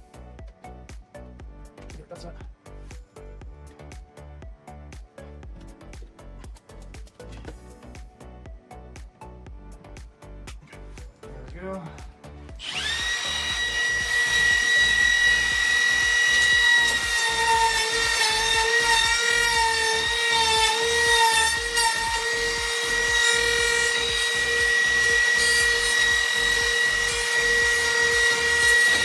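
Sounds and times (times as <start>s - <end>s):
router whining cutting wood: 12.6s - 29.0s.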